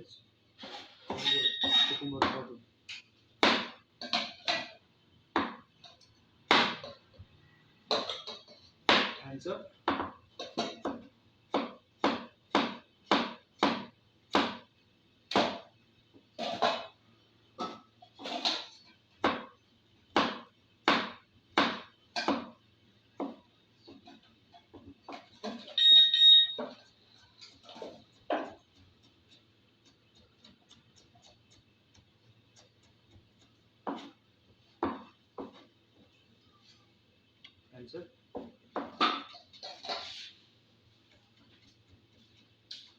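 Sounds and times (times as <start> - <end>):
knife chopping on cutting board: 3.4 - 4.7, 6.5 - 7.0, 8.9 - 9.2, 9.9 - 14.7, 15.3 - 15.7, 17.6 - 19.5, 20.2 - 22.6, 26.6 - 34.2, 34.8 - 35.7.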